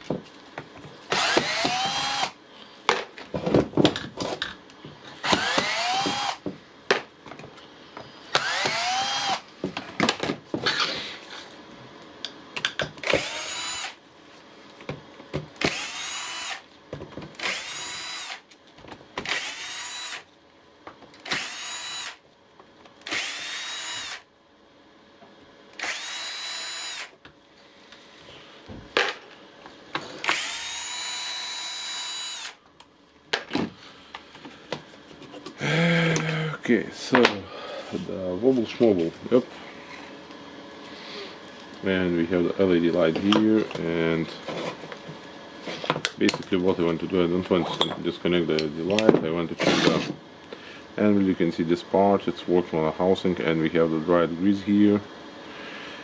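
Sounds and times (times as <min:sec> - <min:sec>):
cordless drill motor spinning up: 0:01.1 - 0:02.4, 0:05.2 - 0:06.4, 0:08.3 - 0:09.4, 0:10.6 - 0:11.2, 0:13.0 - 0:14.0, 0:15.6 - 0:16.6, 0:17.4 - 0:18.4, 0:19.2 - 0:20.3, 0:21.2 - 0:22.2, 0:23.0 - 0:24.3, 0:25.8 - 0:27.2, 0:30.2 - 0:32.6.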